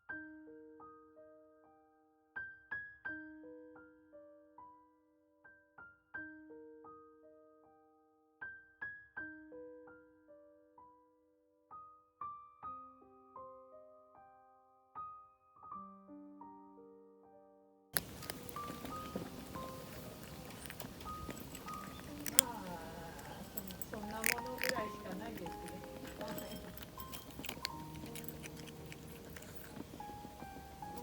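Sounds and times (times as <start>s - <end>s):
soft solo piano: 18.0s - 31.0s.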